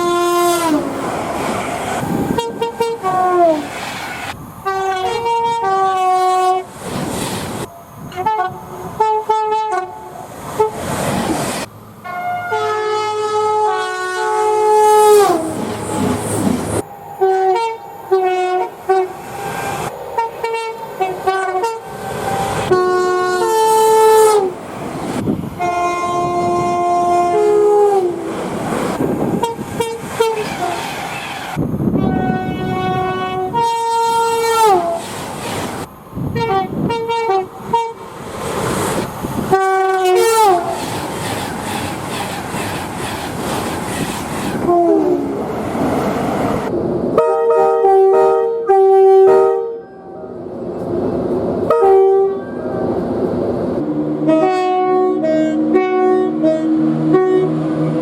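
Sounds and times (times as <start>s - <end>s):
two-note train horns: 0.0s - 1.0s, 2.2s - 3.7s, 4.6s - 6.7s, 7.6s - 10.8s, 12.0s - 24.6s, 25.6s - 28.3s, 29.3s - 30.8s, 32.0s - 35.0s, 36.4s - 38.0s, 39.5s - 40.8s, 44.6s - 45.4s, 47.2s - 50.4s, 51.6s - 52.8s, 53.8s - 58.0s
trains running on rails: 0.0s - 58.0s.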